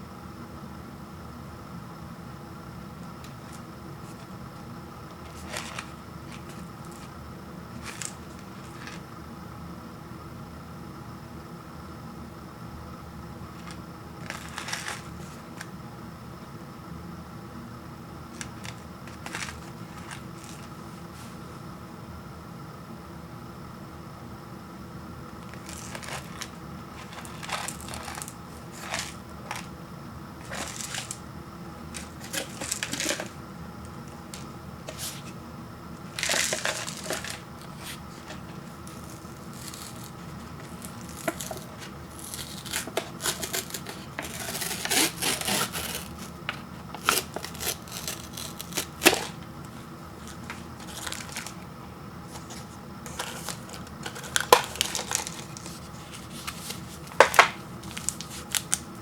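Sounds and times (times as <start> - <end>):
paper and plastic crinkling: 3.2 - 9.1, 13.6 - 15.7, 18.3 - 21.3, 25.4 - 29.8, 30.4 - 35.4, 36.0 - 59.0.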